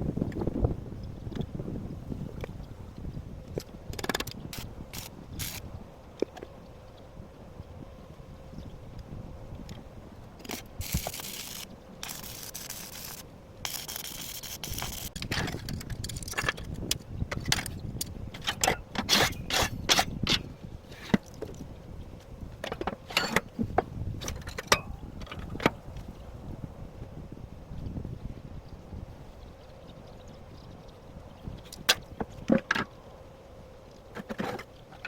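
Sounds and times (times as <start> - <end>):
steel scraping: 10.5 - 15.6, 18.4 - 21.2.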